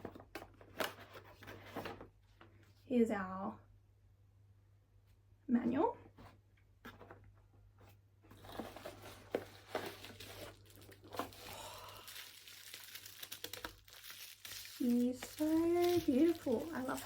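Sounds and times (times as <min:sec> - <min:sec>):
plastic packaging crinkling: 0:08.4 - 0:17.0.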